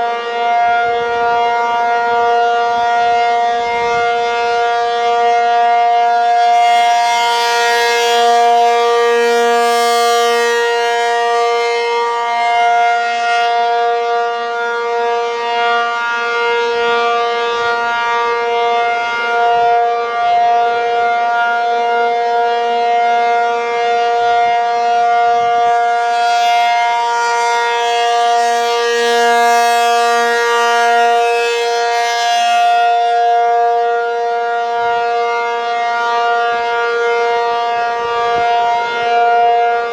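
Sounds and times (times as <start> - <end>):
tornado siren wailing: 0.0 - 39.9.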